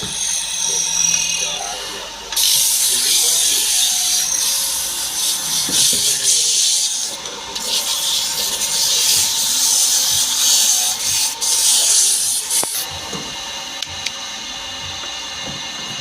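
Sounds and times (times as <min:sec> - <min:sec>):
sanding against wood: 0:02.4 - 0:12.9.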